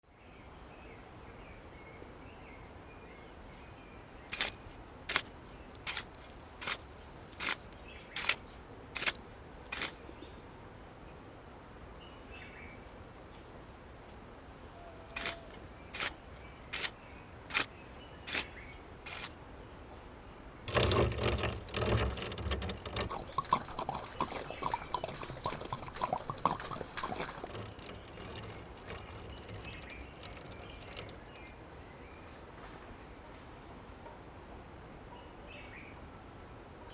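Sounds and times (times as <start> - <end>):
water pouring and splashing: 4.3 - 10.0, 15.0 - 17.7, 18.3 - 19.4, 20.7 - 31.5.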